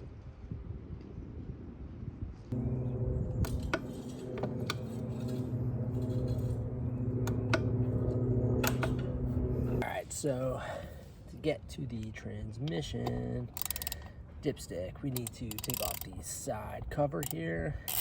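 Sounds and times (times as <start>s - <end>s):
low hum: 2.5s - 15.6s
hand tools clicking and tapping: 13.0s - 14.1s, 15.2s - 16.2s.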